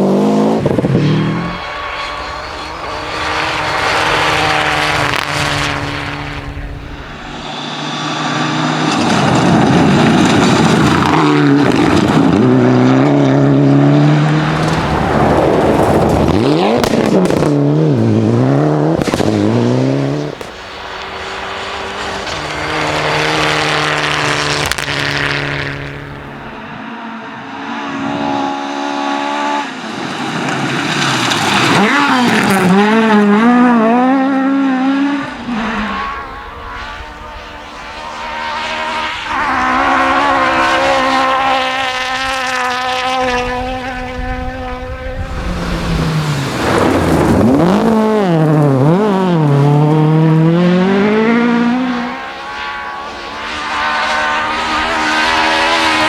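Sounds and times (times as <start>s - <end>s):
rally car engines revving: 0.0s - 56.0s.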